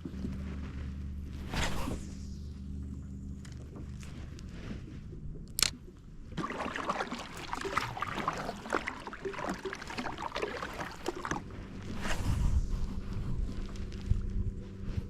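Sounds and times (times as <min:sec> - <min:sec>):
water splashing and trickling: 0:03.7 - 0:12.2
sharp click: 0:05.5 - 0:05.8.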